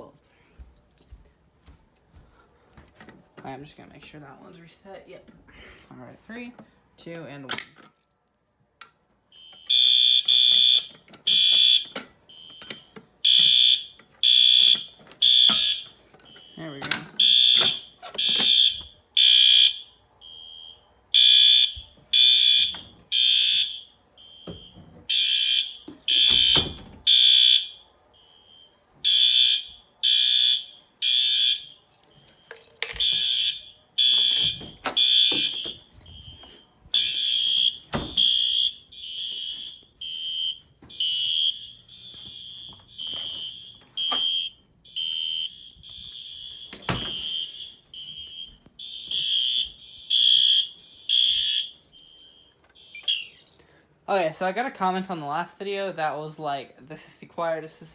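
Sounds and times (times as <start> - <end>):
fire alarm horn blasts: 9.3 - 32.4, 33.0 - 53.4.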